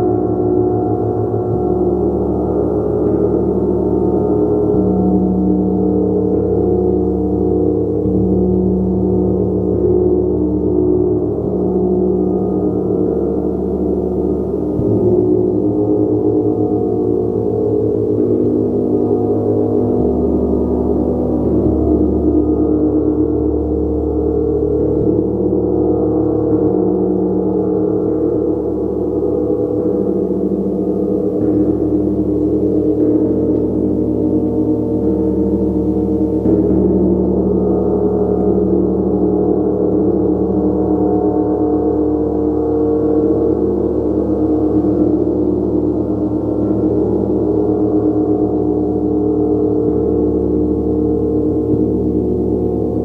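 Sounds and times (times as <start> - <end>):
gong ringing: 26.3 - 38.9.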